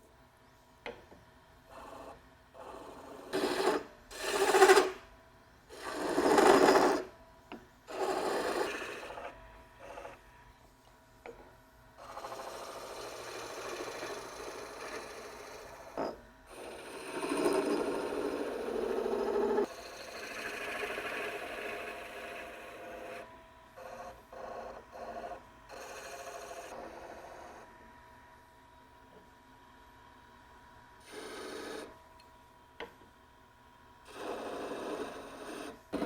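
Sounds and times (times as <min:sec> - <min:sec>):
wood lathe humming: 0:01.7 - 0:05.0, 0:05.8 - 0:07.1, 0:07.9 - 0:10.2, 0:12.0 - 0:27.6, 0:34.1 - 0:36.0
turning tool cutting wood: 0:02.6 - 0:05.0, 0:05.8 - 0:07.1, 0:07.9 - 0:10.2, 0:12.0 - 0:23.2, 0:34.1 - 0:36.0.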